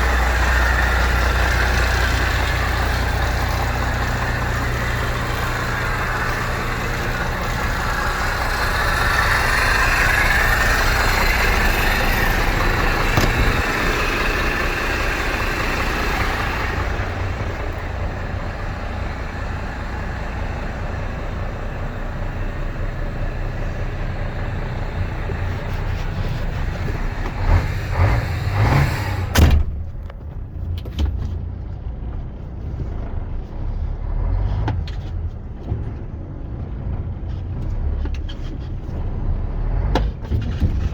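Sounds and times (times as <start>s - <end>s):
diesel engine running: 0.0s - 40.9s
clunks and sharp knock: 13.1s - 13.8s, 29.3s - 31.3s.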